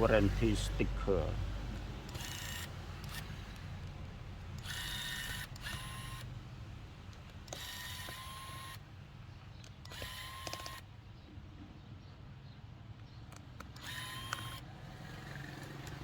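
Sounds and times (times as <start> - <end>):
electric screwdriver whirring: 2.1 - 4.0, 4.6 - 6.3, 7.2 - 8.9, 9.8 - 10.9, 13.4 - 16.0.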